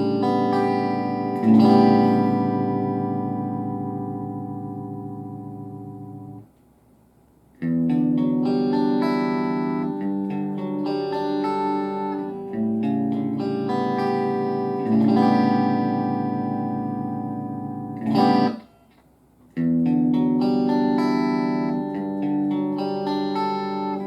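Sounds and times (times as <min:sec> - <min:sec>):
clean electric guitar chords: 0:00.0 - 0:06.5, 0:07.6 - 0:24.0.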